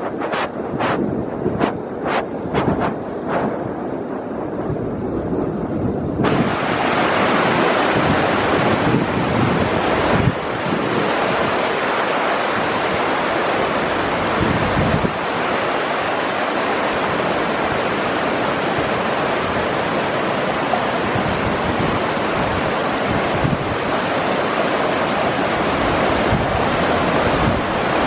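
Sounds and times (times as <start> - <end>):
wind buffeting microphone: 0.0 - 28.0
heavy rain: 6.2 - 28.0.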